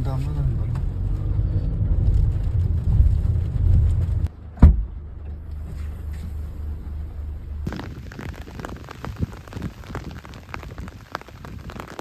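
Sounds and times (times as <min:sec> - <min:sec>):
loud low rumble: 0:00.4 - 0:07.8
steady low hum: 0:03.6 - 0:07.7
sharp thump: 0:04.6 - 0:05.0.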